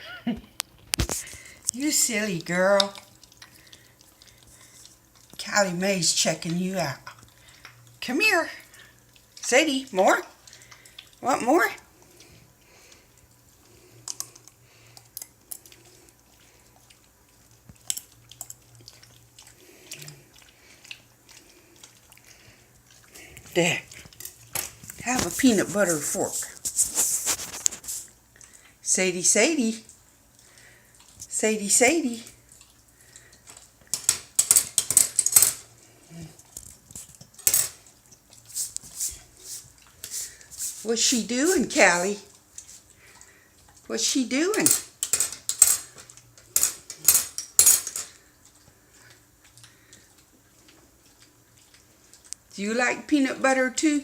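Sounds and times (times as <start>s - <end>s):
dog licking and smacking: 0.7s - 28.8s, 29.8s - 31.4s, 32.1s - 41.2s, 41.9s - 43.9s, 48.1s - 52.6s
metal fork clicking and scraping: 33.9s - 35.6s, 44.6s - 48.2s.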